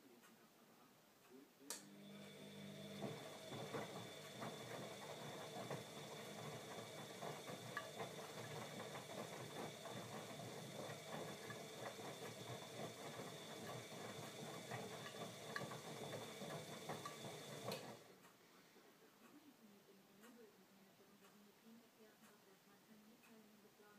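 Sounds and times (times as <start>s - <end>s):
washing machine whining and clicking: 1.7s - 18.1s.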